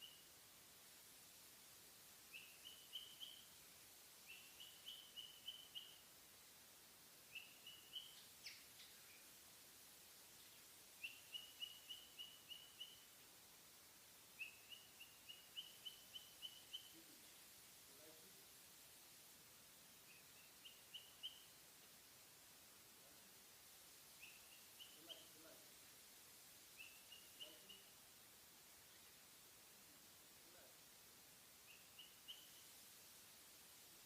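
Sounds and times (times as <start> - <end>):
cockatiel chirping: 2.3 - 3.5, 4.3 - 6.0, 7.3 - 9.2, 11.0 - 13.1, 14.4 - 17.1, 20.1 - 21.5, 24.2 - 25.5, 26.8 - 27.9, 31.7 - 32.7.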